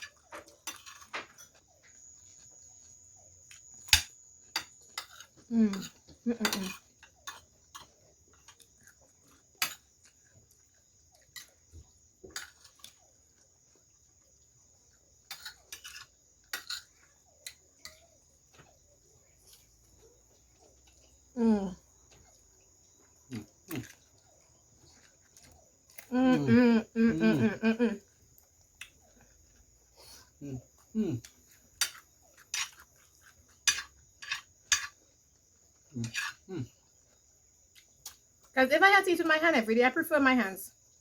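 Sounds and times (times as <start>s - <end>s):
cutlery scraping a plate: 0.0s - 1.6s, 3.9s - 7.9s, 15.2s - 18.0s, 31.8s - 35.0s, 36.0s - 36.5s.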